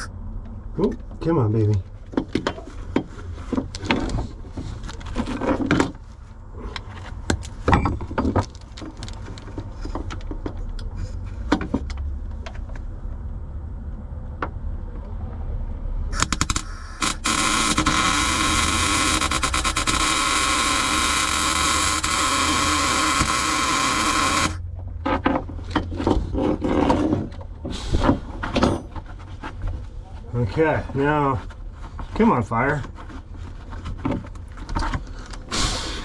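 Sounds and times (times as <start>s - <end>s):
welding arc crackling: 16.1s - 24.6s.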